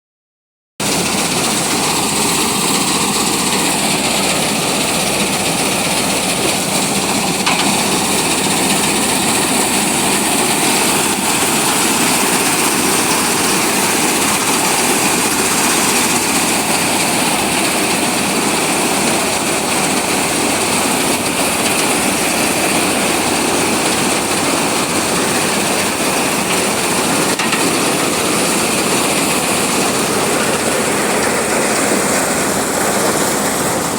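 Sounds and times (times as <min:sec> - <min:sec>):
combine harvester running: 0:00.8 - 0:33.9.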